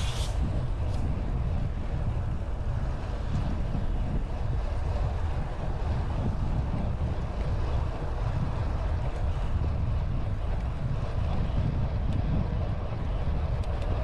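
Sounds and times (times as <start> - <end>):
brief hiss: 0.0 - 0.4
wind buffeting microphone: 0.0 - 14.0.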